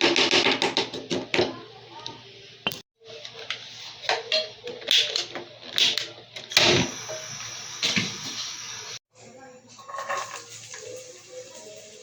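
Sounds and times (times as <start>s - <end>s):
kitchen knocks clicks and scrapes: 0.0s - 1.6s.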